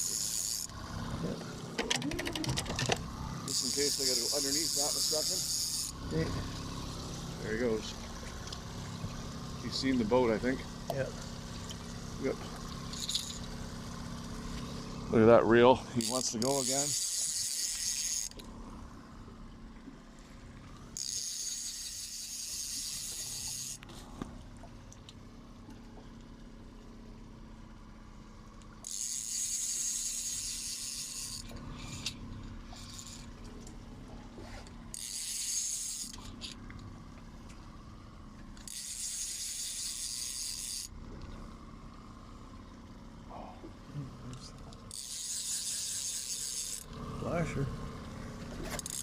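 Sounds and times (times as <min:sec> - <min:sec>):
fishing reel ratchet buzzing: 0:00.0 - 0:15.2, 0:15.8 - 0:18.6, 0:20.9 - 0:24.0, 0:28.6 - 0:33.6, 0:34.6 - 0:36.7, 0:38.4 - 0:41.0, 0:44.5 - 0:47.5, 0:48.6 - 0:49.0
steady low hum: 0:00.0 - 0:49.0.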